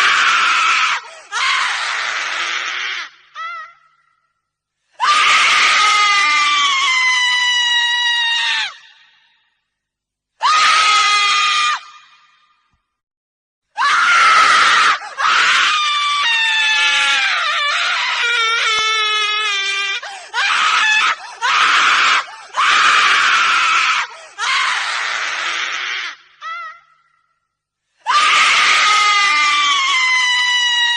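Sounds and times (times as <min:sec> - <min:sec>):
woman screaming: 0:05.0 - 0:09.0, 0:10.4 - 0:12.2, 0:13.8 - 0:27.1, 0:28.1 - 0:30.9.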